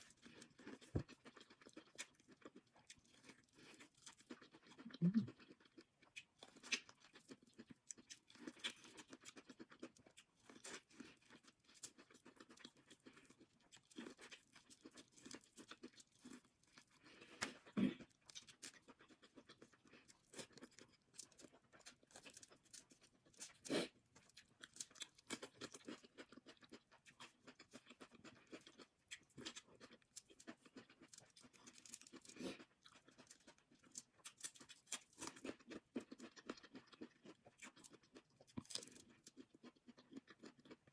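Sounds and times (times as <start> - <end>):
wet chewing: 0.0 - 40.9.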